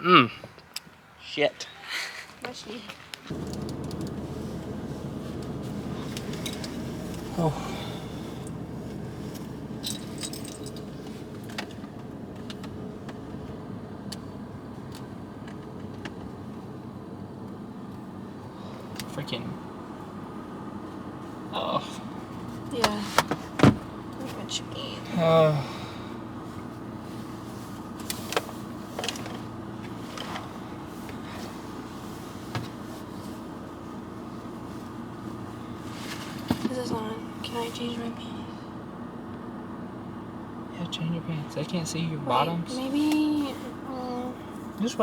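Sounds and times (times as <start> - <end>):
vehicle engine hum inside cabin: 3.2 - 45.0
clinks of handled objects: 9.8 - 11.1.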